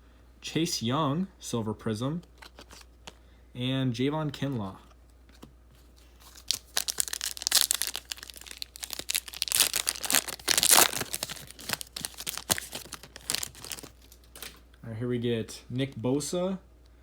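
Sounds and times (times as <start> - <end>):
wrapper tearing and crinkling: 6.0 - 14.5.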